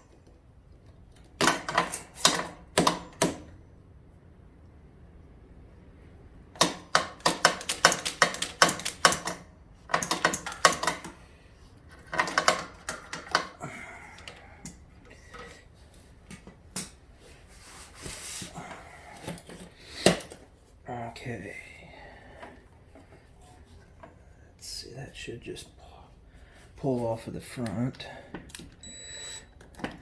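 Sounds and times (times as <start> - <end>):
socket ratchet clicking: 6.6 - 11.1.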